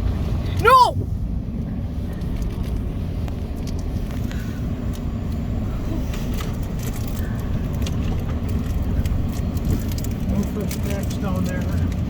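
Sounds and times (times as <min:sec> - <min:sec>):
engine and tyres rumbling: 0:00.0 - 0:12.0
vehicle knocks and rattles: 0:06.3 - 0:12.0.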